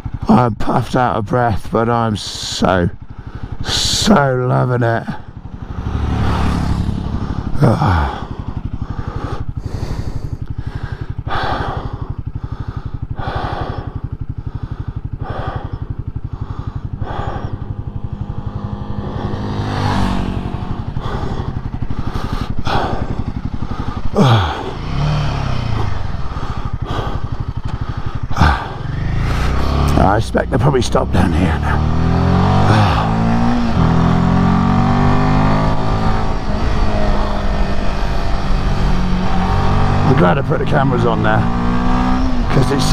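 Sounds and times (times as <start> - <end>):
motorcycle engine idling: 0.0 - 42.9
person breathing heavily: 3.0 - 3.7, 5.1 - 29.8, 32.6 - 33.5.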